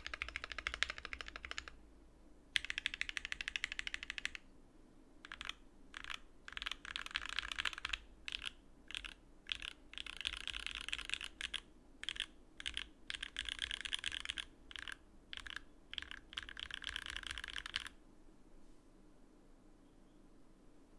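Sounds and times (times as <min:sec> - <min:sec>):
mechanical keyboard typing: 0:00.0 - 0:01.8, 0:02.6 - 0:04.4, 0:05.2 - 0:18.0.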